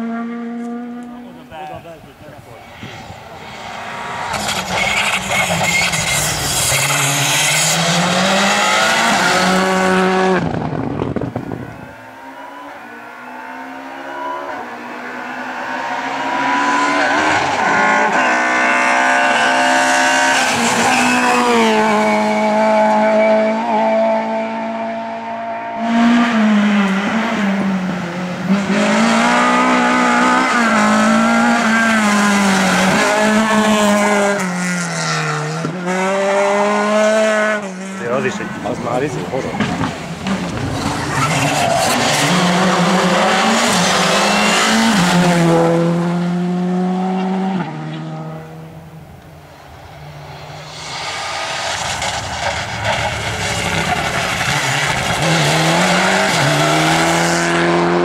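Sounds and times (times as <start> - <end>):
rally car engines revving: 0.0 - 58.0.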